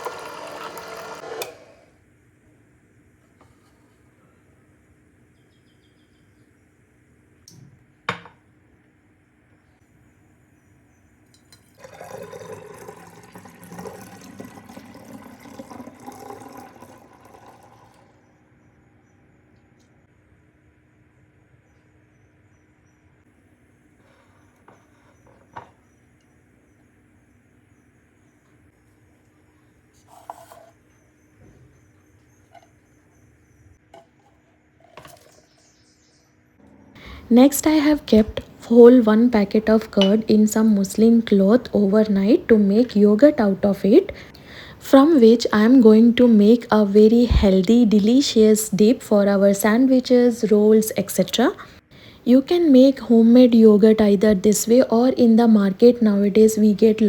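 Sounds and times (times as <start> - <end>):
kitchen items knocking and clinking: 7.6 - 8.4
juice pouring into container: 11.7 - 18.2
low steady hum: 34.6 - 57.0.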